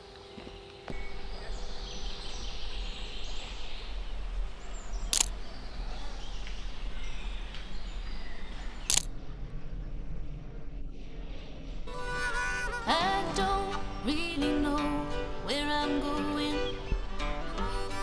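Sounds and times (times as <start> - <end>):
faint birdsong: 0.0 - 10.1, 16.4 - 18.0
camera shutter clicks: 0.9 - 9.1, 16.7 - 18.0.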